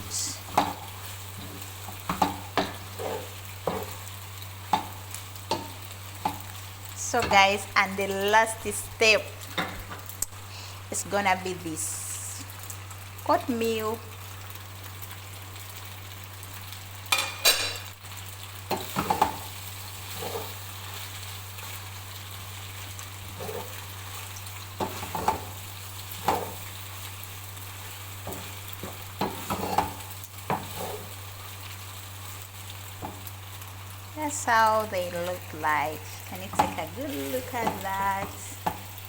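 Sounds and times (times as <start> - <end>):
spaghetti sizzling in a pan: 0.0 - 39.0
spoon scraping and clinking on pan: 17.1 - 17.9.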